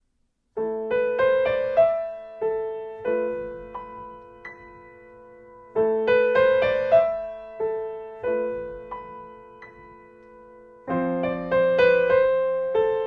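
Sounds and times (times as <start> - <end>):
slow gentle piano melody: 0.5 - 13.0.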